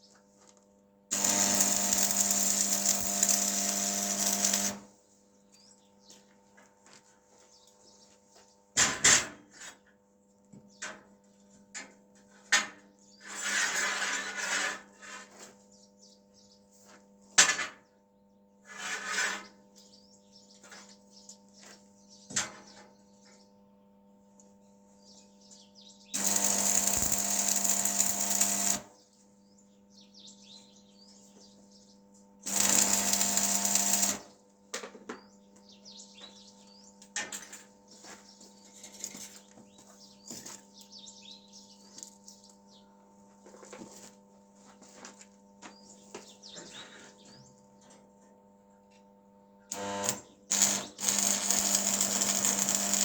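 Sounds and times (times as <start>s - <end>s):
power tool running: 1.1s - 4.9s, 26.2s - 28.9s, 32.4s - 34.3s, 49.7s - 53.0s.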